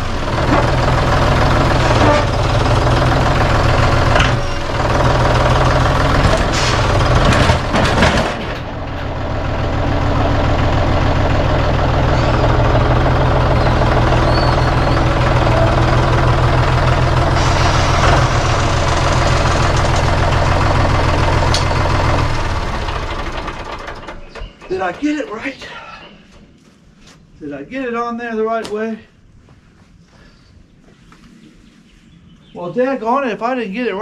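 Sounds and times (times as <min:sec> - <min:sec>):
machine engine running: 0:00.0 - 0:25.3
clattering: 0:06.1 - 0:09.1, 0:17.4 - 0:20.6.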